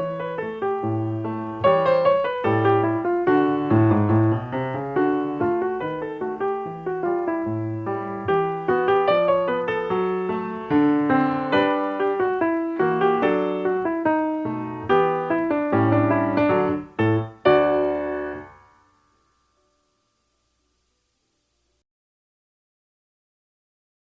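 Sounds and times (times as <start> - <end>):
piano music: 0.0 - 20.8.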